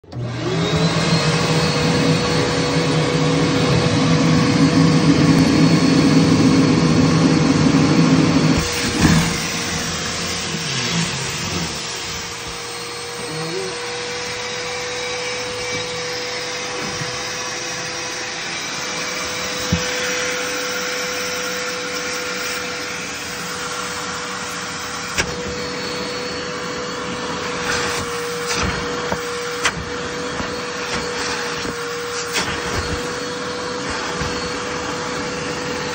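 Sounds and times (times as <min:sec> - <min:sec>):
vacuum cleaner motor whine: 0:00.0 - 0:35.9.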